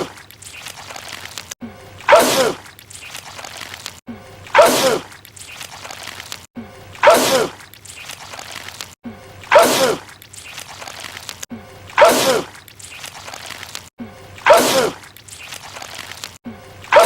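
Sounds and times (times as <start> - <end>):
man sneezing: 7.0 - 7.6, 9.5 - 10.0, 12.0 - 12.5, 14.5 - 15.0.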